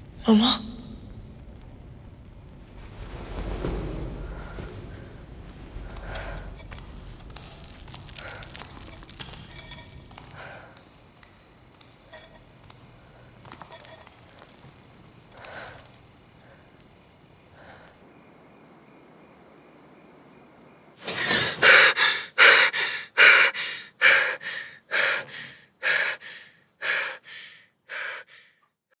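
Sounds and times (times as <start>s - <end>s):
person breathing hard: 5.8s - 6.8s, 15.4s - 16.6s, 21.0s - 28.6s.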